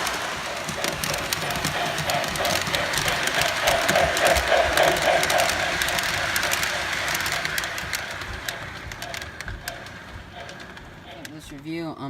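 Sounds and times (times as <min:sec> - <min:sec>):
model steam locomotive chuffing: 0:00.0 - 0:12.0
wheels clicking over rail joints: 0:00.0 - 0:12.0.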